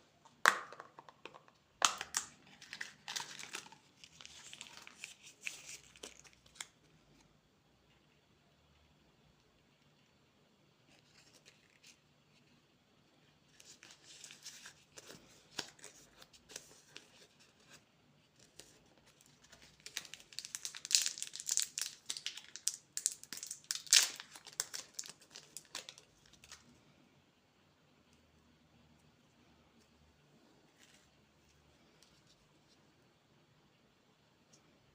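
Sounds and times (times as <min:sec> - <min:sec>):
candy wrapper crinkling: 0:00.4 - 0:07.0, 0:18.4 - 0:26.7.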